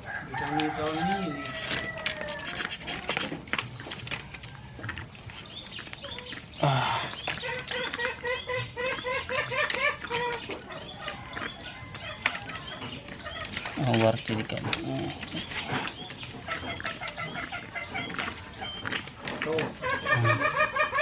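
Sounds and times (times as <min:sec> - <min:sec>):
chicken clucking: 0:00.0 - 0:21.0
clicks and rustles: 0:00.0 - 0:21.0
chicken squawk: 0:15.6 - 0:21.0.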